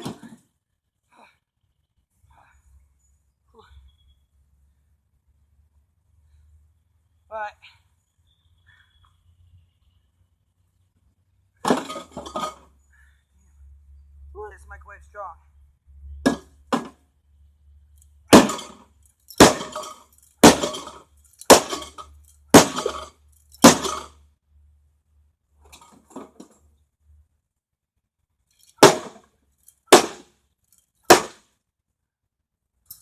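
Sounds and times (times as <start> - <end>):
microwave being smashed: 18.3 - 18.8, 19.4 - 24.1.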